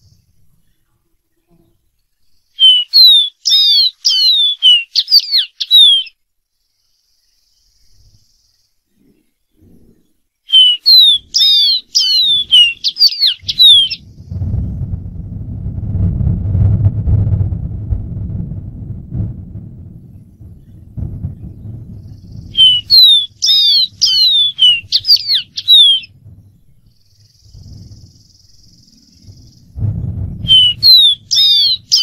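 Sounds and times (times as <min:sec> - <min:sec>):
bird singing whistled notes: 0:02.0 - 0:14.4, 0:20.0 - 0:29.8, 0:30.4 - 0:32.0
low rumble: 0:13.4 - 0:32.0.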